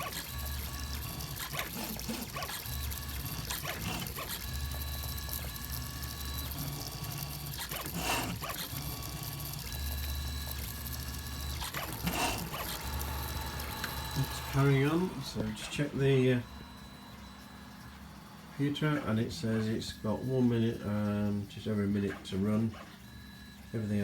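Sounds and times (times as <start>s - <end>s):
stepper motors whining: 0.0s - 20.6s.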